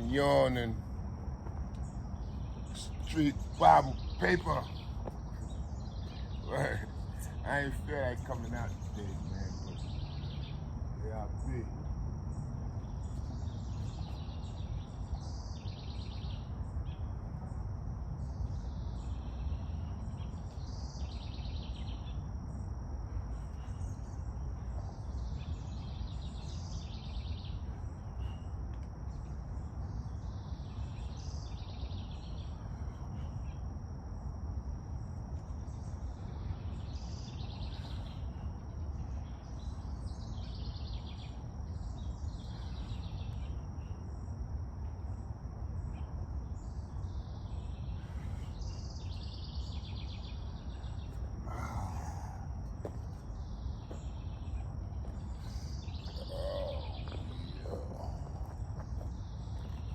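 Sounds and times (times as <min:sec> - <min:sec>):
steady low rumble: 0:00.0 - 0:31.5, 0:32.1 - 0:59.9
birds chirping: 0:00.0 - 0:59.9.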